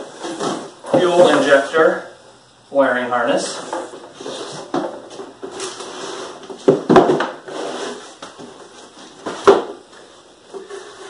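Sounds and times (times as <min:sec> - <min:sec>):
knocks on boxes: 0:06.6 - 0:07.4.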